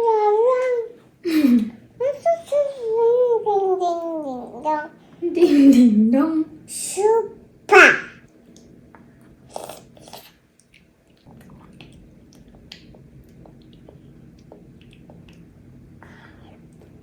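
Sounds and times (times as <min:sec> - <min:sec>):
wet chewing mouth clicks: 0:09.5 - 0:15.5.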